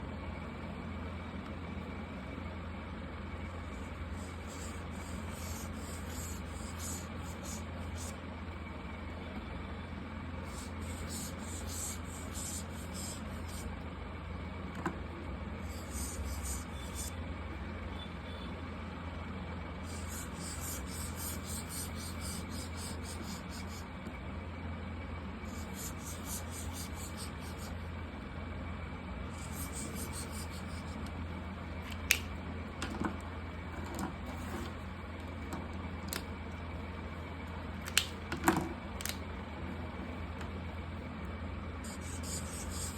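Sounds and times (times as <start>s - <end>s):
steady low hum: 0.0s - 42.9s
markers rubbing on paper: 4.2s - 8.2s, 10.5s - 13.7s, 15.7s - 17.2s, 19.8s - 23.9s, 25.5s - 27.8s, 29.3s - 31.1s, 41.8s - 42.9s
small click: 31.9s - 32.3s, 37.8s - 38.2s, 39.0s - 39.2s.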